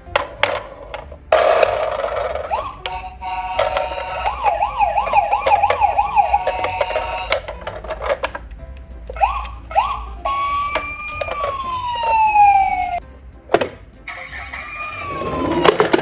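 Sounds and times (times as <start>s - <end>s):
clicks and clatter: 0.0s - 9.6s, 15.5s - 16.0s
rattling noise: 0.0s - 16.0s
electronic toy siren wailing: 2.0s - 7.8s, 9.2s - 13.0s, 14.1s - 16.0s.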